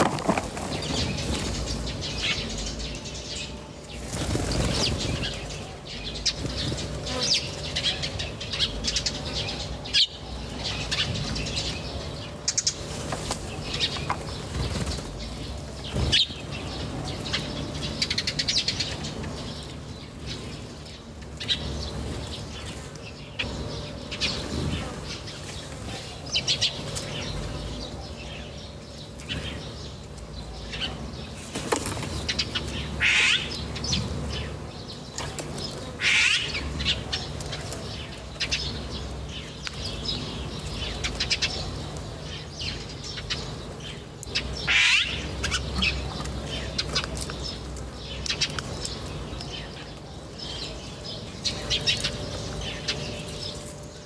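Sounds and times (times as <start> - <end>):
small birds chirping: 0.0 - 54.0
shrill sweeping bird calls: 32.3 - 34.0, 36.0 - 37.0, 44.6 - 46.0.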